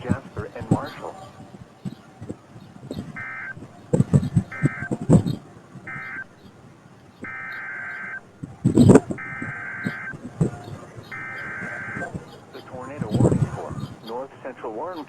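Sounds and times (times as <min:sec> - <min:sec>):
buzzy screeching data tones: 0:02.9 - 0:06.3, 0:07.2 - 0:14.2.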